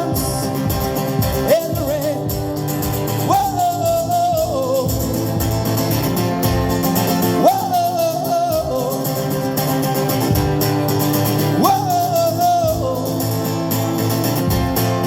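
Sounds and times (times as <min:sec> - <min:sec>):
person singing: 0:00.0 - 0:02.4, 0:03.1 - 0:05.2, 0:07.3 - 0:09.5, 0:11.6 - 0:13.2
acoustic guitar strumming: 0:00.0 - 0:15.0.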